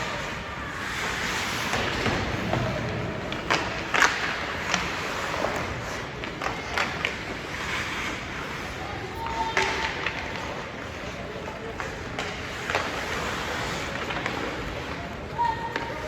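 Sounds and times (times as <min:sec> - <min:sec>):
faint crowd shouts: 0:15.3 - 0:16.0.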